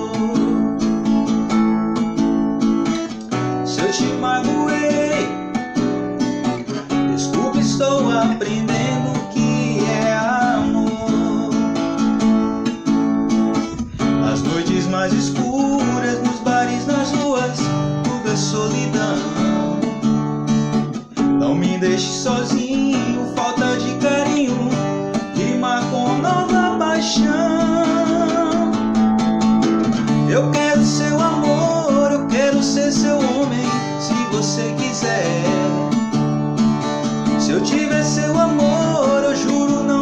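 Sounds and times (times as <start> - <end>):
person singing: 0.0 - 1.9, 3.4 - 6.0, 6.6 - 12.6, 13.6 - 20.0, 21.2 - 36.1, 37.0 - 40.0
acoustic guitar strumming: 0.0 - 40.0.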